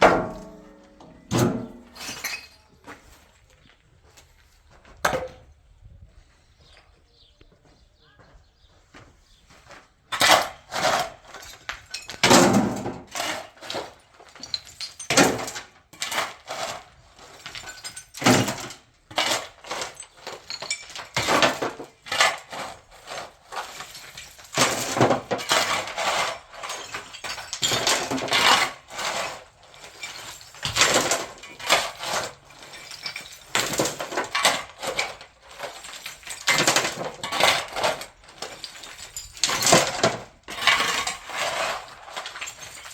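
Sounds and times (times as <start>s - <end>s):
metal objects clattering: 0.0s - 2.9s, 10.1s - 42.9s.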